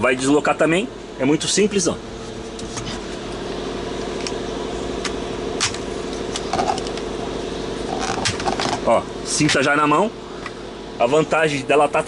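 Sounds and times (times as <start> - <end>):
steady mechanical hum: 0.0 - 12.0.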